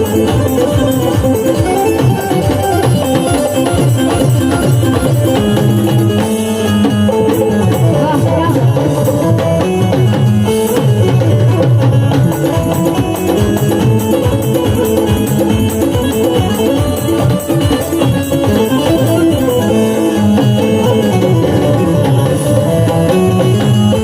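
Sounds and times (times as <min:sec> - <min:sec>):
hand drums: 0:00.0 - 0:24.0
sustained melody notes: 0:00.0 - 0:24.0.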